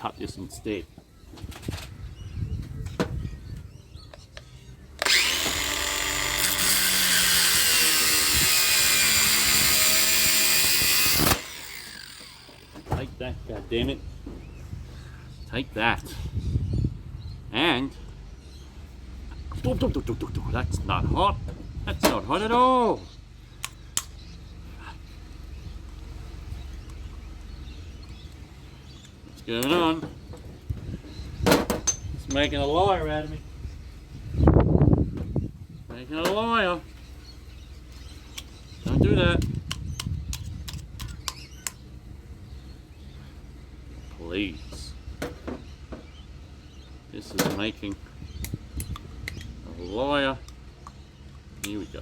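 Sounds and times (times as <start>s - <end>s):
angle grinder cutting steel: 5.0s - 12.8s.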